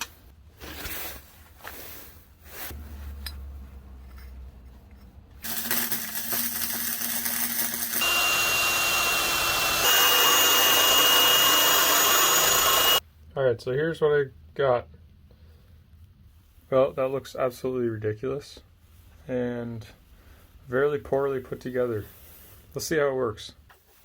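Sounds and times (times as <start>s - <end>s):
power tool whining: 5.4s - 13.0s.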